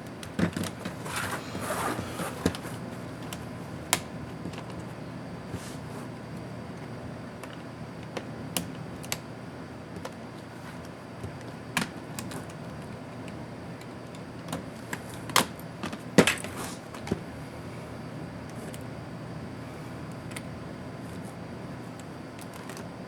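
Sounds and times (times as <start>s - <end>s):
steady background hiss: 0.8s - 3.3s.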